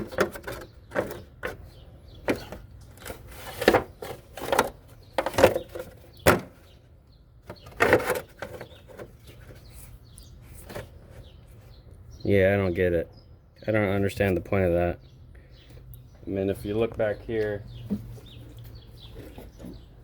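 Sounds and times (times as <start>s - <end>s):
plastic parts clicking and knocking: 0.0s - 6.6s.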